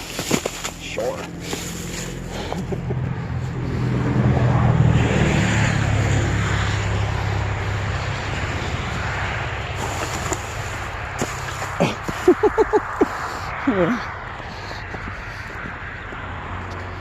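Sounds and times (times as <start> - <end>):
vehicle engine driving off: 0.4 - 11.7.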